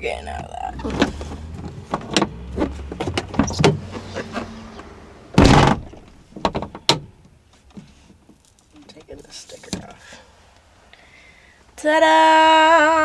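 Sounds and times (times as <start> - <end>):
loud door clunk: 0.8 - 7.1
van door lock clicks and knocks: 0.8 - 7.3.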